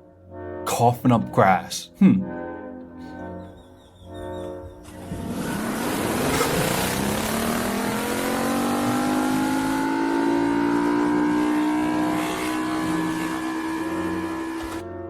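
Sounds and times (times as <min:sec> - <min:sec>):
rough engine noise: 0:04.8 - 0:14.8.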